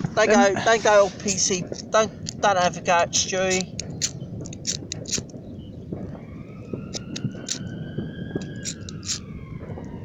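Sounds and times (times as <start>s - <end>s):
fireworks popping and crackling: 1.2s - 10.0s
siren-like wailing tone: 5.6s - 10.0s.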